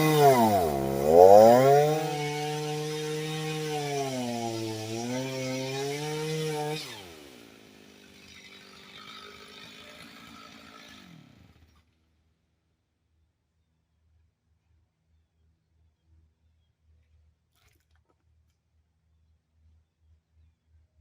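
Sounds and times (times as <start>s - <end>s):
chainsaw engine running: 0.0s - 11.8s.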